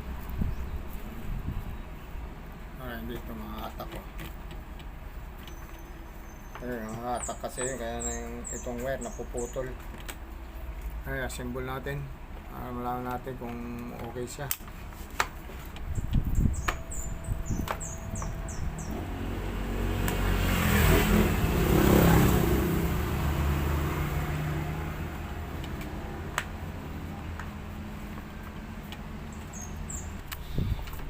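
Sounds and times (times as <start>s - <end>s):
vehicle passing by: 16.2s - 30.8s.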